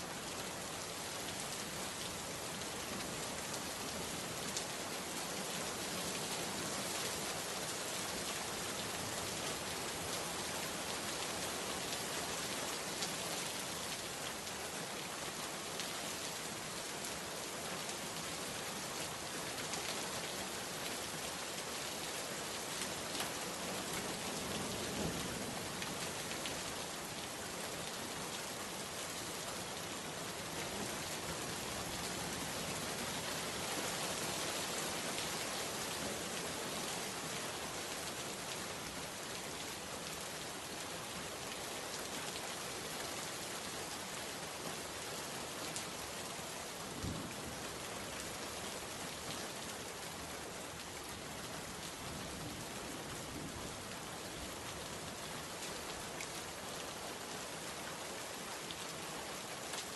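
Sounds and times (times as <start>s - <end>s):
rain falling on a surface: 0.0s - 59.9s.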